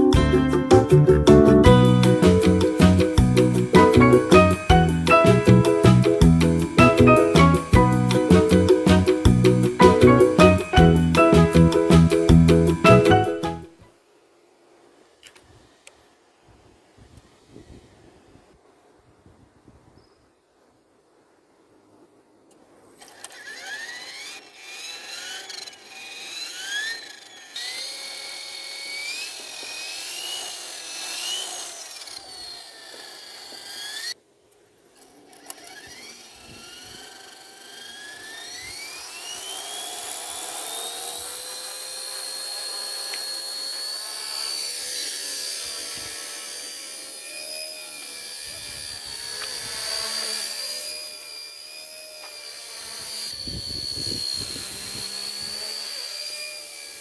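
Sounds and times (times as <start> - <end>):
small electric motor whining: 1.8 - 14.0, 22.5 - 57.0.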